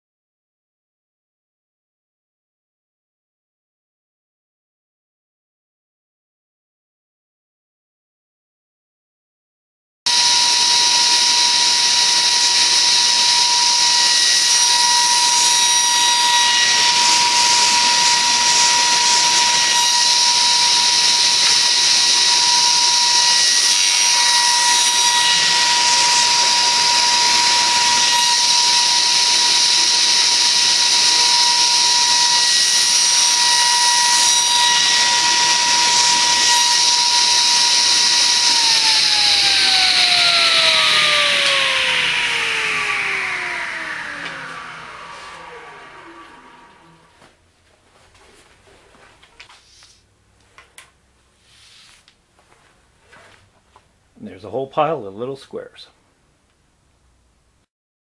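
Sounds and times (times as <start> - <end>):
table saw whining: 10.1 - 47.4.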